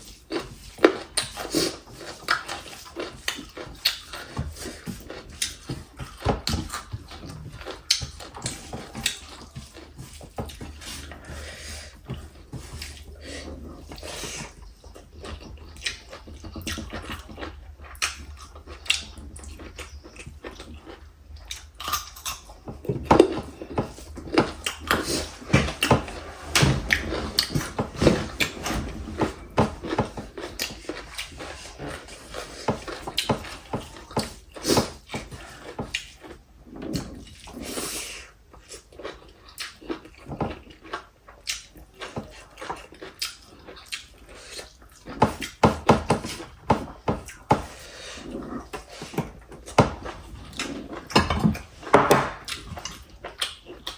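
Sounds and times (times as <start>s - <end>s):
chewing: 0.0s - 53.9s
slurping soup: 23.4s - 38.9s.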